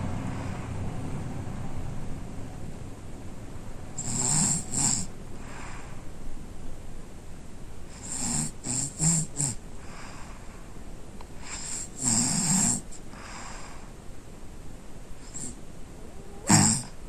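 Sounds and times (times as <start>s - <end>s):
boy snoring deeply: 0.0s - 0.8s, 4.0s - 6.0s, 7.9s - 10.4s, 11.4s - 13.9s, 15.2s - 15.6s, 16.2s - 17.0s
soft breathing: 0.0s - 1.1s, 5.0s - 6.3s, 9.7s - 12.0s, 12.8s - 14.1s.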